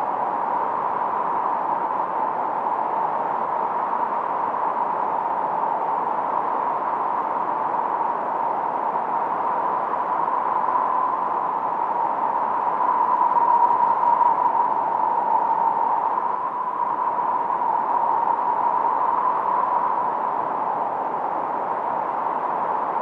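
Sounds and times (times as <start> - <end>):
faint whistling tone: 9.4 - 21.4.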